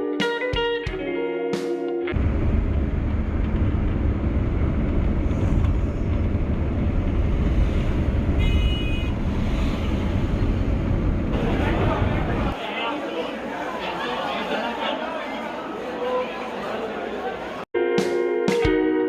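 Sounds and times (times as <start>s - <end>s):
guitar music: 0.0s - 2.2s, 17.8s - 19.0s
low rumble: 2.1s - 8.4s, 9.1s - 12.5s.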